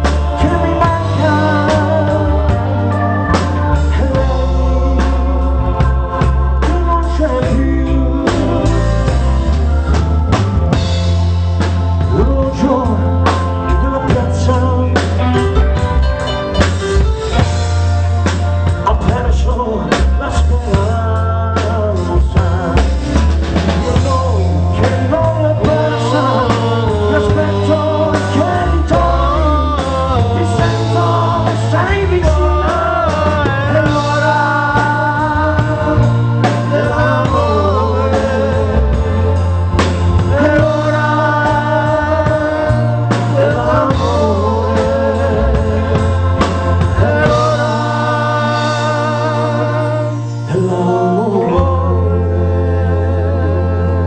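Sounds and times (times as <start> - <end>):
person singing: 0.0 - 9.8, 18.8 - 54.0
live pop band playing: 0.0 - 54.0.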